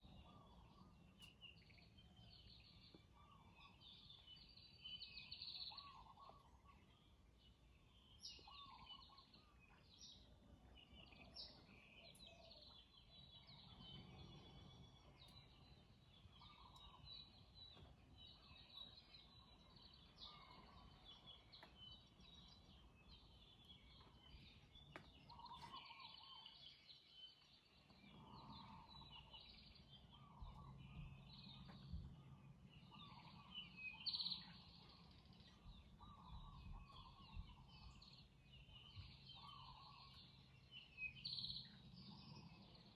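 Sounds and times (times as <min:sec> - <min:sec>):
wild birds chirping: 0:00.0 - 0:42.9.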